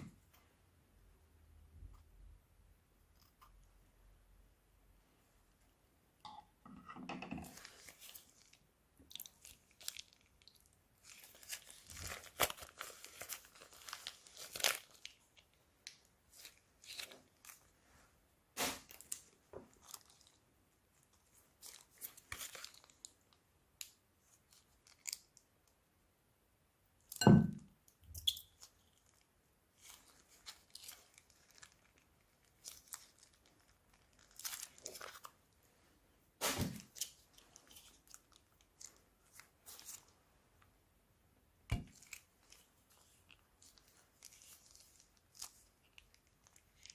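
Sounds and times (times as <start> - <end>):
plastic bags crinkling: 9.2 - 17.7, 29.8 - 35.4, 41.8 - 46.9
slime being squeezed: 18.6 - 19.2.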